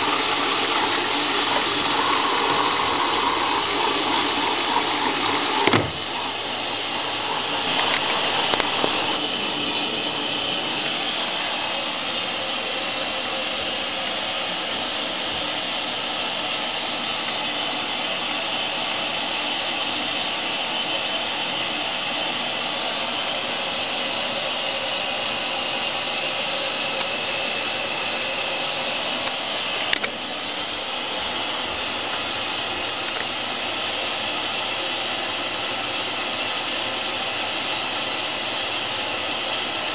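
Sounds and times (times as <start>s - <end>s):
washing machine rushing hiss: 0.0s - 39.9s
washing machine clicks: 5.6s - 6.2s.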